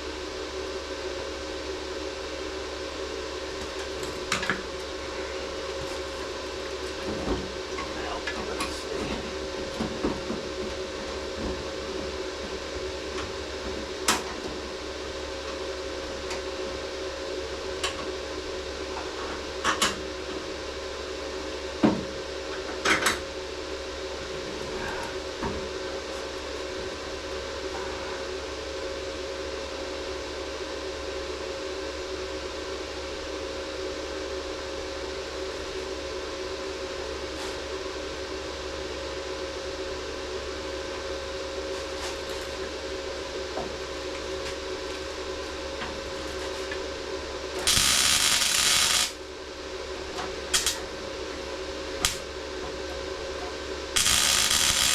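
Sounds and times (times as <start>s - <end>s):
machine hum: 0.0s - 17.7s, 42.3s - 54.9s
welder crackling: 47.6s - 49.2s, 50.5s - 50.8s, 52.0s - 52.3s, 54.0s - 54.9s.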